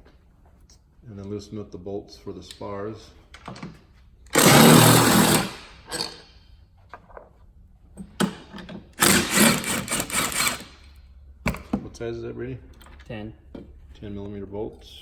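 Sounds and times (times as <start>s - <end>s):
power driver spinning bolts: 4.3s - 6.2s, 9.0s - 10.8s.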